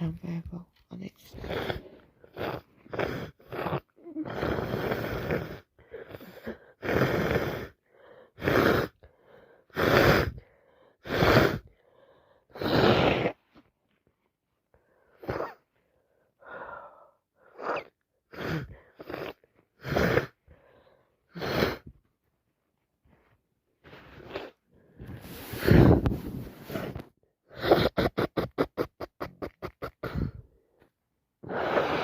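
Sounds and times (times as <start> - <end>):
woman breathing: 7.7 - 12.6, 14.7 - 17.6, 20.3 - 21.9, 23.1 - 27.1, 30.0 - 32.0.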